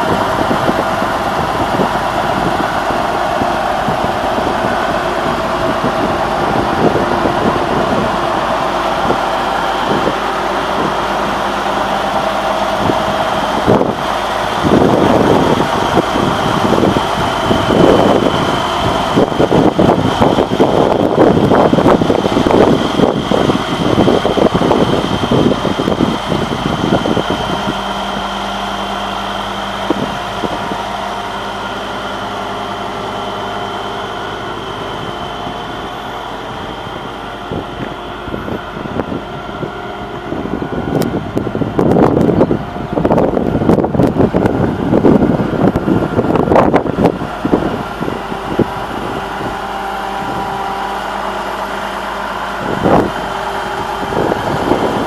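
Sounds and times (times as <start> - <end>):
tractor diesel engine idling: 0.0 - 55.0.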